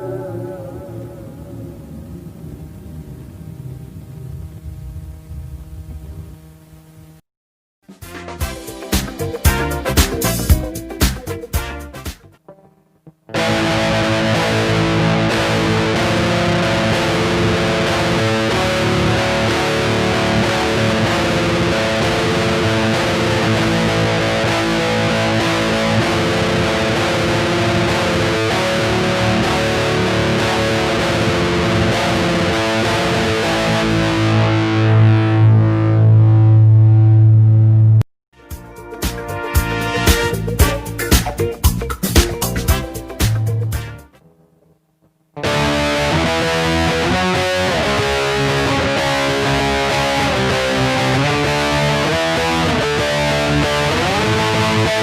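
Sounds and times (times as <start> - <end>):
distorted electric guitar: 0.0 - 7.2, 7.8 - 55.0.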